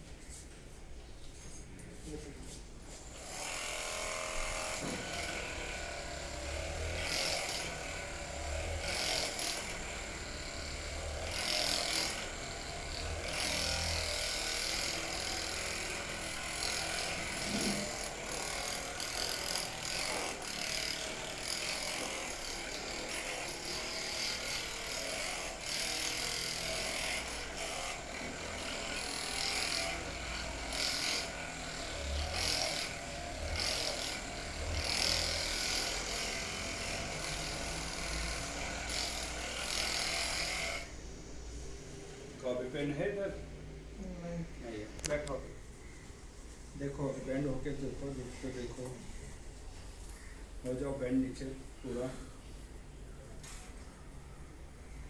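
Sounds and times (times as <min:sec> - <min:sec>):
electric massager buzzing: 0:03.0 - 0:43.2.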